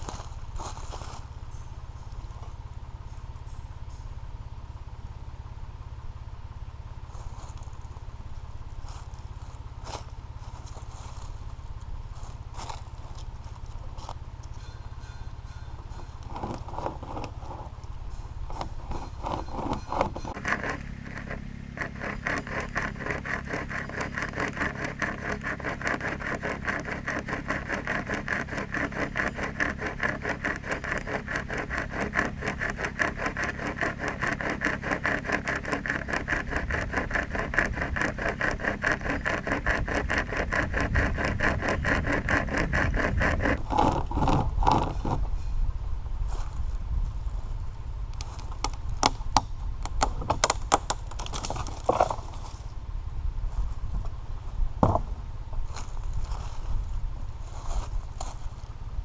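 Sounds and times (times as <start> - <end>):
chainsaw chain rasping through wood: 20.3 - 43.6.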